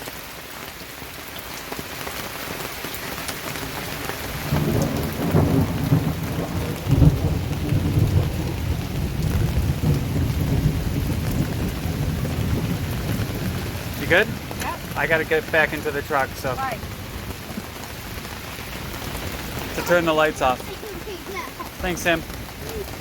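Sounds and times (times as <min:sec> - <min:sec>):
heavy rain pouring: 0:00.0 - 0:23.0
thunder rumbling: 0:04.2 - 0:23.0.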